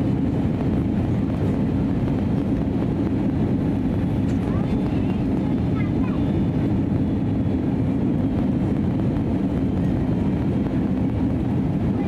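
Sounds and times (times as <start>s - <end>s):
airplane cabin rumble: 0.0s - 12.0s.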